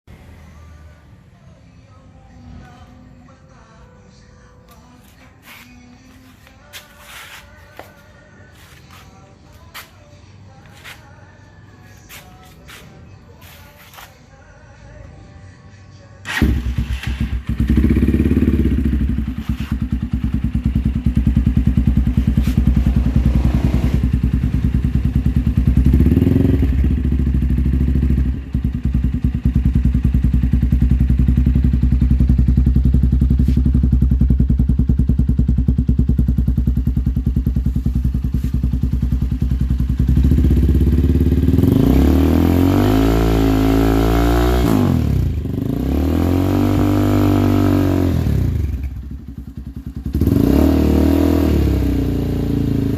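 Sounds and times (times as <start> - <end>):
motorcycle idling: 16.2 - 52.9
motorcycle revving: 16.2 - 52.9.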